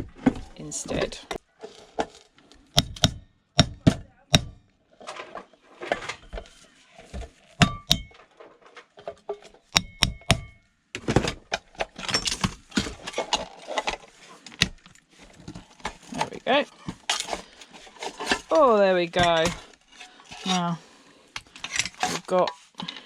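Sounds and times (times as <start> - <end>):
metal parts knocking and clinking: 7.6 - 14.0.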